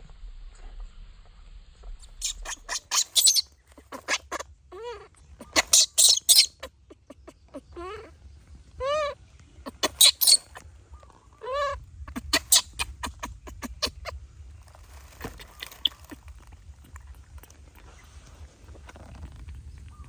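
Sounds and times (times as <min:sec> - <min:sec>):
baby monkey crying: 0:02.2 - 0:08.2, 0:08.8 - 0:14.2, 0:15.2 - 0:16.4.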